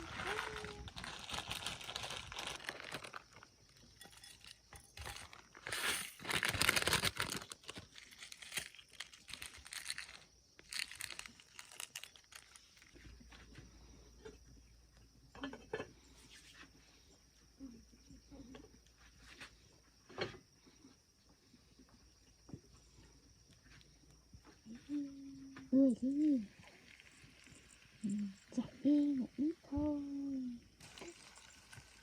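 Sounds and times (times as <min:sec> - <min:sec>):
rustling and crinkling: 0:00.0 - 0:14.1.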